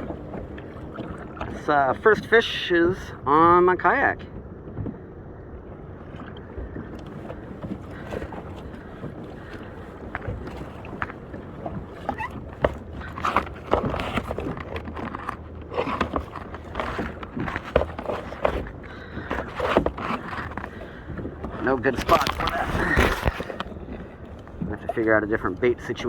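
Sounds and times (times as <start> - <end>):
fishing gear clicking and rattling: 12.0 - 26.0.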